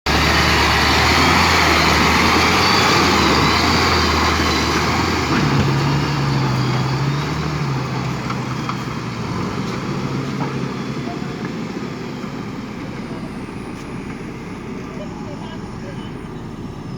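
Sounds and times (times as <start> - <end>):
diesel engine running and revving: 0.0 - 16.9.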